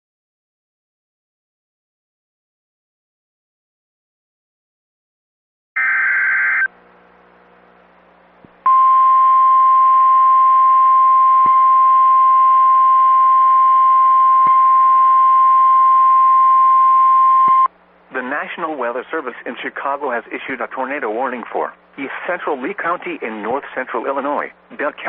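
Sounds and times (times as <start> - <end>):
faint radio hum and hiss: 17.7 - 25.0.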